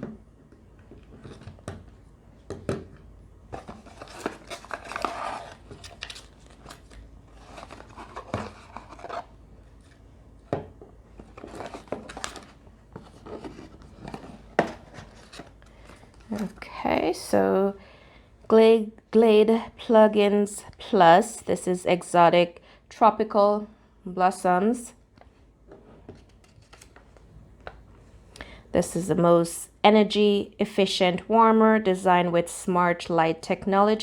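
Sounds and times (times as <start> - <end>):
box being unpacked by hand: 3.6 - 10.0, 11.1 - 16.6.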